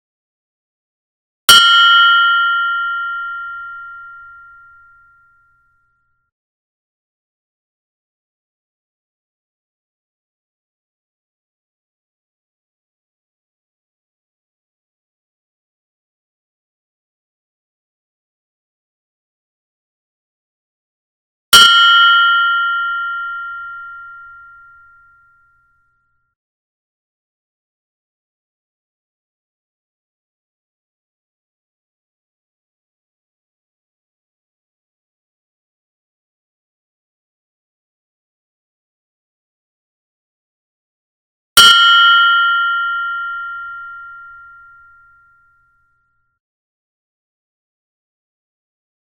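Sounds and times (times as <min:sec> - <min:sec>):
meditation bell ringing: 0:01.5 - 0:06.2, 0:21.6 - 0:25.7, 0:41.6 - 0:46.1.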